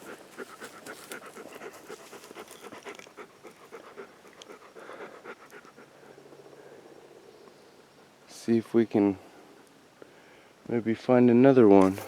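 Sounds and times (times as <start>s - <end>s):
dog panting rapidly: 0.0s - 6.1s.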